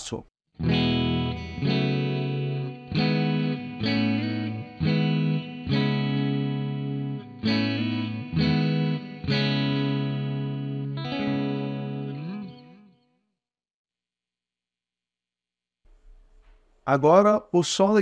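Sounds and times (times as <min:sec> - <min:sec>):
electric guitar chords strummed: 0:00.6 - 0:13.0.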